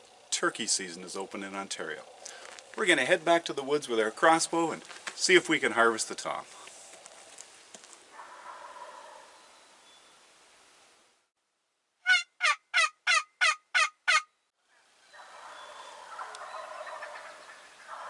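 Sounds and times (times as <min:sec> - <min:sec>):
turkey calling: 0:08.2 - 0:09.5, 0:12.0 - 0:18.0.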